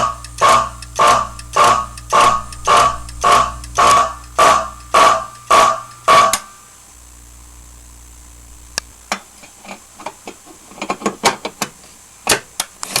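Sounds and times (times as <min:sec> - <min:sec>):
mechanical clicks and knocks: 0:00.0 - 0:06.6
fire alarm bell stroke: 0:00.0 - 0:06.7
low hum: 0:00.0 - 0:09.1.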